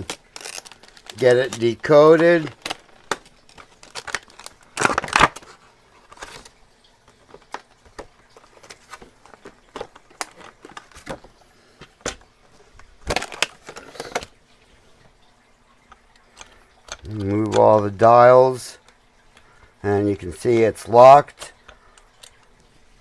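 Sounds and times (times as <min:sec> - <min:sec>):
packaging crinkling: 0:00.0 - 0:14.4.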